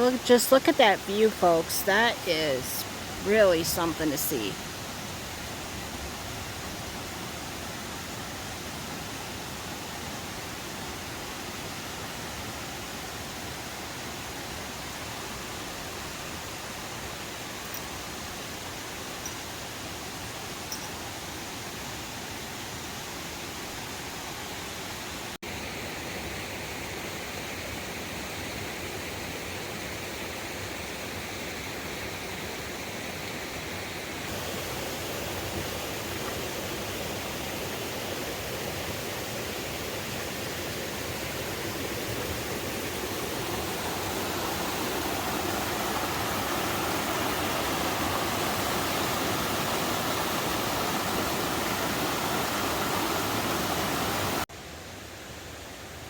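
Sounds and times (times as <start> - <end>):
waterfall rushing: 34.1 - 54.5.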